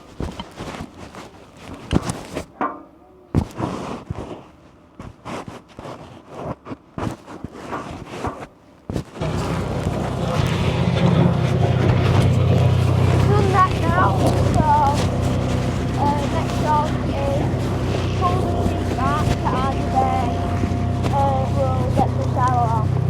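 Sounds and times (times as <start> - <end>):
engine running: 9.2 - 23.0.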